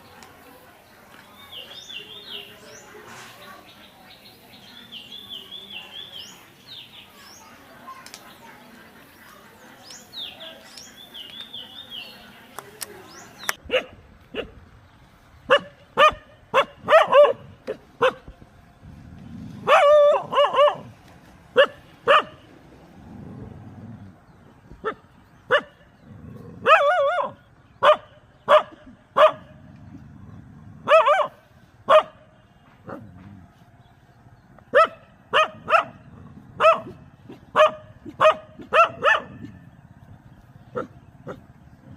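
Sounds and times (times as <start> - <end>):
dog barking: 13.7 - 14.6, 15.5 - 18.2, 19.6 - 20.9, 21.6 - 22.4, 24.8 - 25.8, 26.6 - 29.6, 30.8 - 32.2, 34.7 - 36.0, 36.6 - 39.6, 40.7 - 41.4.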